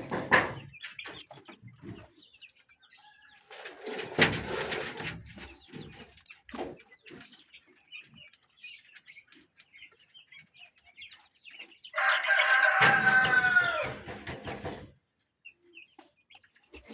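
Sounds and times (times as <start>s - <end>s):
chickens clucking softly: 0.0s - 16.9s
rooster crowing: 11.9s - 14.0s.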